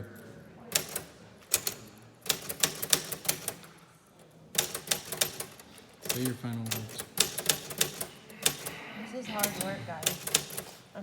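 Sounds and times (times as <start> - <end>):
typewriter keys striking: 0.8 - 3.7, 4.6 - 8.7, 9.4 - 10.8.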